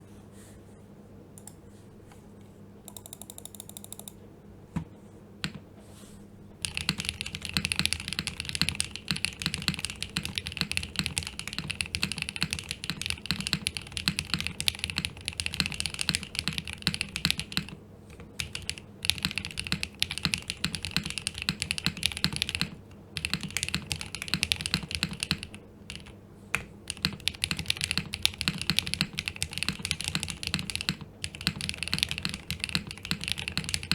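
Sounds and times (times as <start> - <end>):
typing on mechanical keyboard: 2.9 - 4.2, 6.6 - 33.9.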